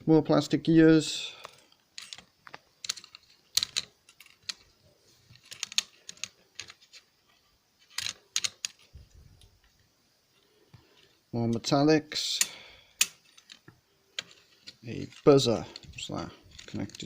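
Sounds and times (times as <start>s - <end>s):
plastic parts clicking: 1.4s - 7.1s, 7.8s - 9.7s, 12.4s - 17.0s.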